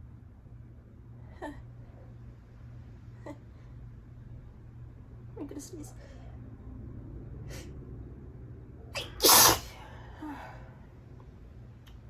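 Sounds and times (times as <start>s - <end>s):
woman sneezing: 9.0s - 9.8s.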